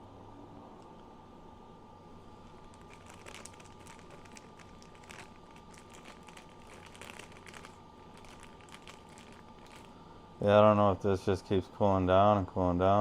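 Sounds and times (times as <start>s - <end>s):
faint steady whine: 0.0s - 13.0s
packaging crinkling and rustling: 2.3s - 10.0s.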